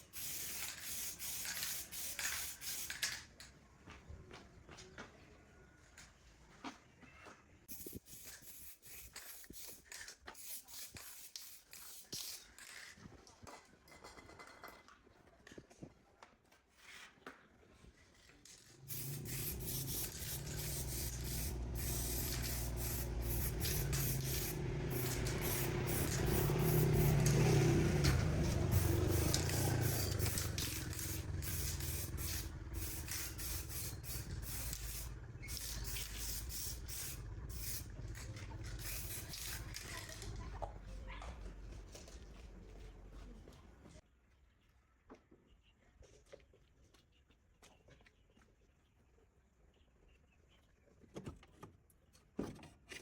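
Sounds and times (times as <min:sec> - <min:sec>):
low motor hum: 0:18.8 - 0:40.9.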